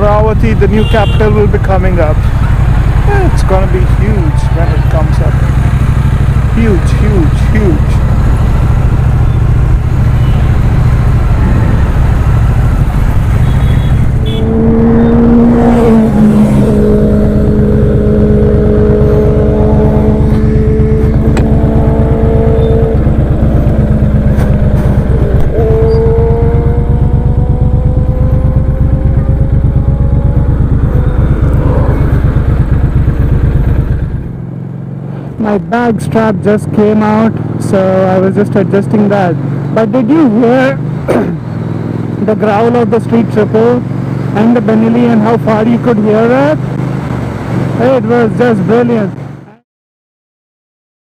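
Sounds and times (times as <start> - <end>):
motorcycle engines accelerating: 0.0 - 49.6
steady low rumble: 1.5 - 34.4.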